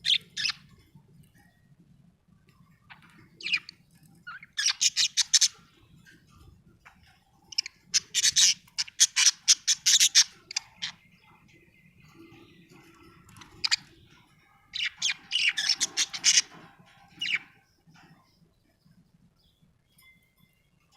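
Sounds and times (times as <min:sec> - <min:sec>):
budgerigar chirping: 0:00.0 - 0:00.7, 0:02.9 - 0:05.6, 0:07.5 - 0:11.0, 0:13.3 - 0:14.0, 0:14.7 - 0:16.6, 0:17.2 - 0:17.5.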